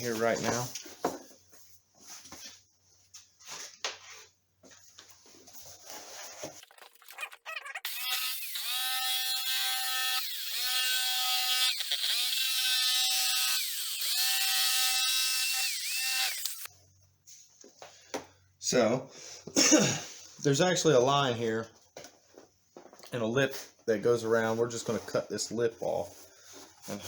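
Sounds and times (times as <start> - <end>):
power tool cutting plastic: 6.6 - 16.7.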